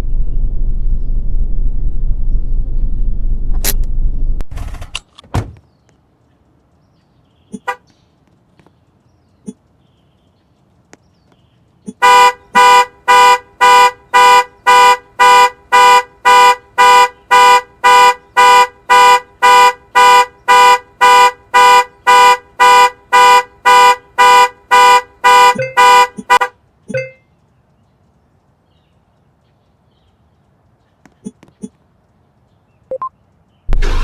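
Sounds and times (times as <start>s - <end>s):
vehicle horn honking: 11.9s - 26.6s.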